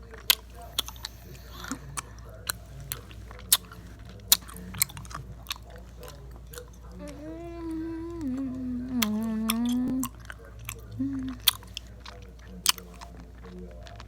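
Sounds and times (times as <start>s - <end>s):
person chewing crunchy food: 0.0s - 14.0s
hummed tone: 7.0s - 10.1s.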